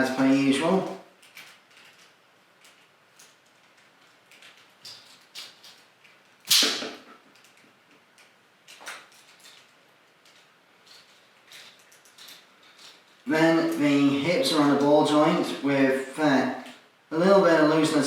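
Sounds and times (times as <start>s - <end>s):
plastic figure joints clicking: 1.2s - 6.3s, 8.2s - 13.2s
sharp plastic clack: 6.4s - 7.6s.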